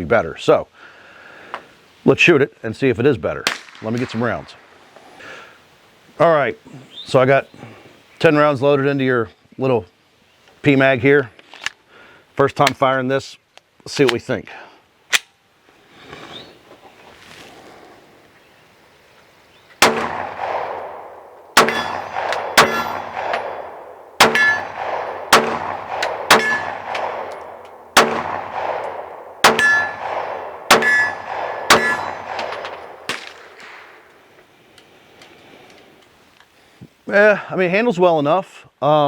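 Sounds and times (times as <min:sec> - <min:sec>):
pistol shots with ringing decay: 0:19.8 - 0:34.1.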